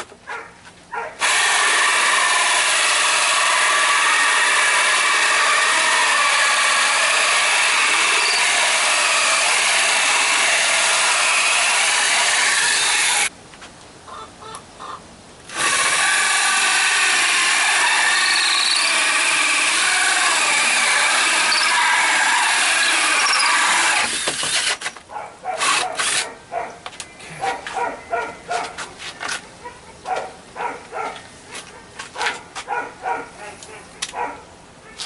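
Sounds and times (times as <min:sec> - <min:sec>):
power drill drilling into wood: 0:01.2 - 0:13.3, 0:15.5 - 0:24.9, 0:25.6 - 0:26.2.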